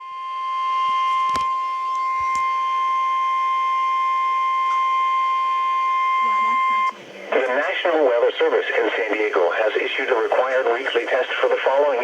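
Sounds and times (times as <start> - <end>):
steady alarm tone: 0.0 - 7.0.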